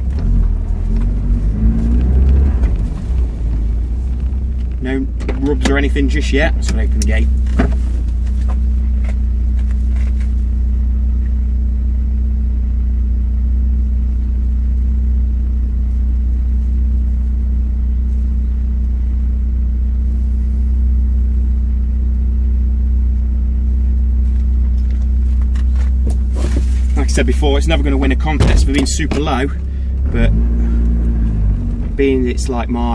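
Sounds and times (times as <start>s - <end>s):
car engine idling: 0.0s - 32.9s.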